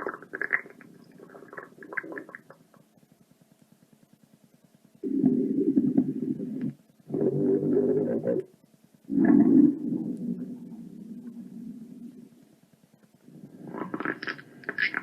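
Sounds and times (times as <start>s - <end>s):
stomach rumbling with pops: 0.0s - 15.0s
low drawn-out stomach growl: 5.0s - 8.5s, 9.1s - 12.5s, 13.2s - 15.0s.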